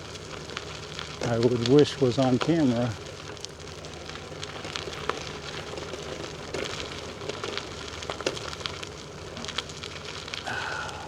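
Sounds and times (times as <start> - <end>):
bicycle rolling on trail: 0.0 - 11.0
small clicks and crackles: 0.0 - 11.0.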